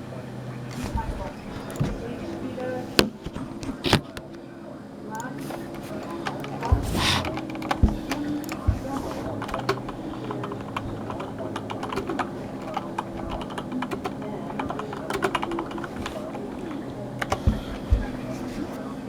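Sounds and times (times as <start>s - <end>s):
faint low hum: 0.0s - 19.0s
keyboard keys clicking: 5.2s - 18.8s.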